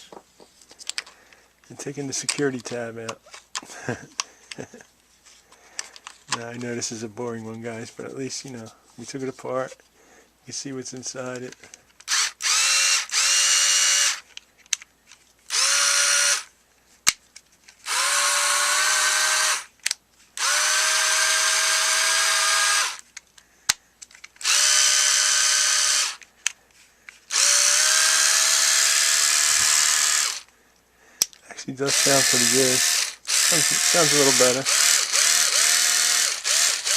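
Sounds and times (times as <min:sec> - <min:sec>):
cordless screwdriver motor whine: 0:12.1 - 0:14.2, 0:15.5 - 0:16.5, 0:17.8 - 0:19.7, 0:20.4 - 0:23.0, 0:24.4 - 0:26.3, 0:27.3 - 0:30.5, 0:31.9 - 0:36.9.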